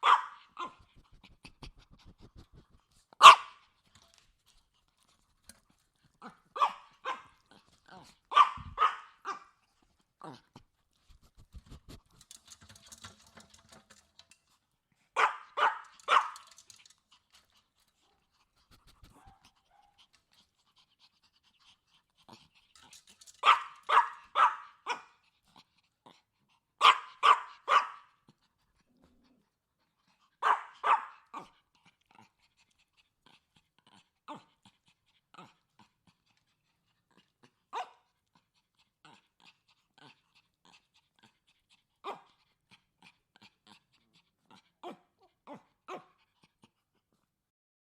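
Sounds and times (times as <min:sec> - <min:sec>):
small dog barking: 0:00.0 - 0:00.8, 0:03.2 - 0:03.6, 0:06.5 - 0:07.4, 0:08.3 - 0:09.5, 0:15.2 - 0:16.6, 0:23.4 - 0:25.1, 0:26.8 - 0:28.2, 0:30.4 - 0:31.5, 0:37.7 - 0:38.0, 0:42.0 - 0:42.3, 0:44.8 - 0:46.1.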